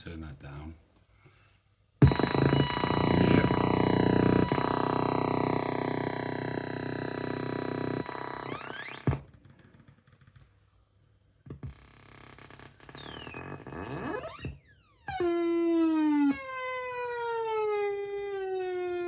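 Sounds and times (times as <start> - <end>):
electronic tones gliding in pitch: 2.0 - 9.2, 11.7 - 19.0.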